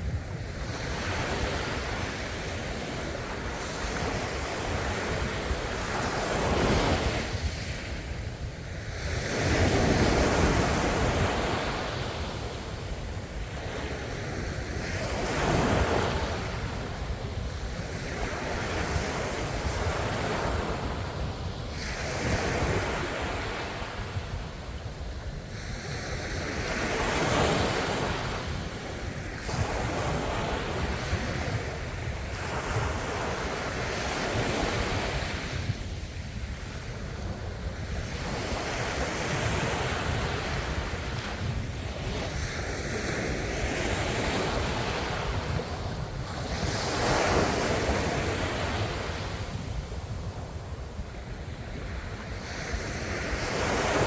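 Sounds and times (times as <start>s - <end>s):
wind rumbling on microphone: 0.0s - 54.0s.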